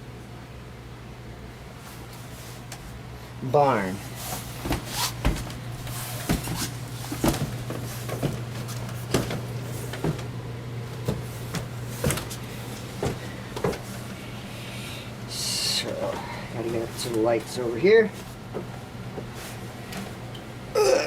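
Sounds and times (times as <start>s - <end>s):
steady low hum: 0.0s - 21.0s
footsteps: 11.0s - 14.1s.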